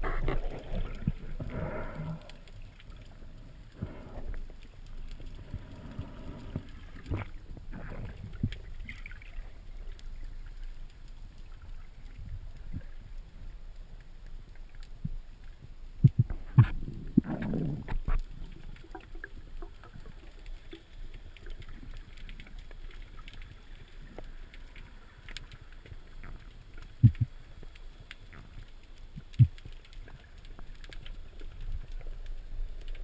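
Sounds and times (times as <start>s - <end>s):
faint steady hiss: 0.0s - 33.0s
dull underwater knocks: 27.0s - 27.3s.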